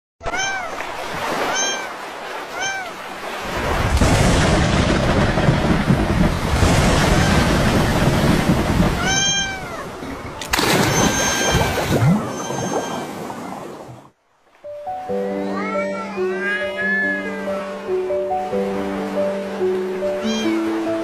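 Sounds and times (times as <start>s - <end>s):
cat meowing: 0.2s - 0.8s, 1.5s - 1.9s, 2.5s - 3.0s, 9.0s - 9.9s, 15.5s - 17.4s, 20.2s - 20.6s
rain: 3.4s - 10.0s
rumbling thunder: 3.6s - 10.0s.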